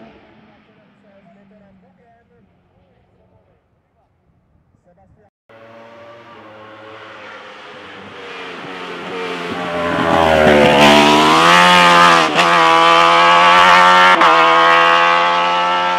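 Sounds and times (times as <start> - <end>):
racing car engine accelerating: 5.5 - 15.9.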